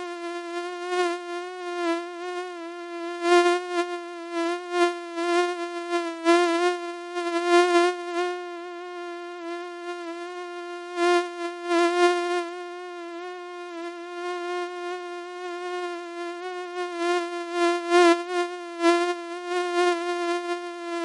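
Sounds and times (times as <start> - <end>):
mosquito wingbeat whine: 0.0 - 21.0.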